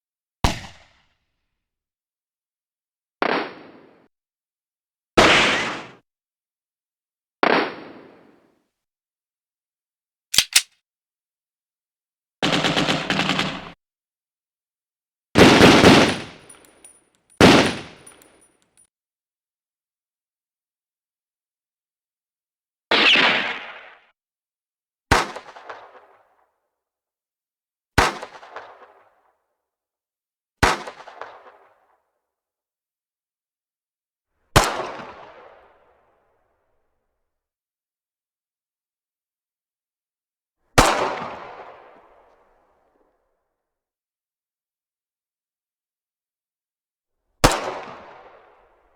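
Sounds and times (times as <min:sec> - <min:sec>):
single gunshot: 0:00.4 - 0:01.0
sharp gunshot cracks: 0:10.4 - 0:10.7
automatic gunfire burst: 0:12.4 - 0:13.8, 0:15.4 - 0:16.4, 0:17.4 - 0:18.0
pistol shots with echo: 0:17.4 - 0:18.2.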